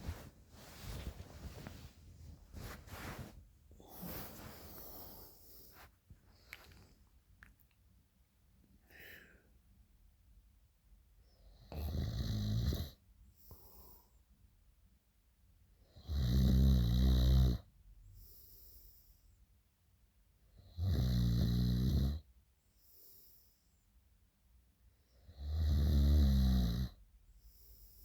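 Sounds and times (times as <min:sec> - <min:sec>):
faint breathing: 0:00.0 - 0:07.1, 0:08.8 - 0:09.6, 0:13.4 - 0:14.3.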